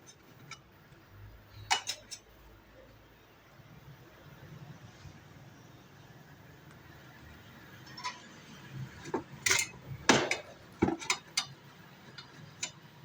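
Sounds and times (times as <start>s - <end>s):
metal hand tools clinking: 9.4s - 11.6s.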